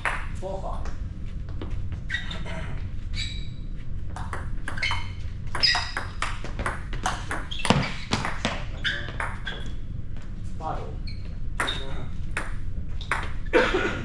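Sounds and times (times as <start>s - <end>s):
table tennis ball pinging: 4.1s - 9.7s, 11.6s - 13.5s.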